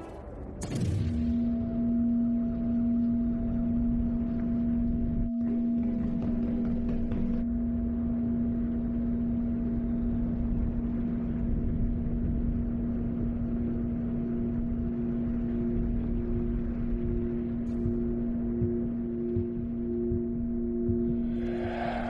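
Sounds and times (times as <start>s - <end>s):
low hum drone: 0.0s - 22.0s
pulsing tone: 17.8s - 22.0s
rumbling wash: 21.1s - 22.0s.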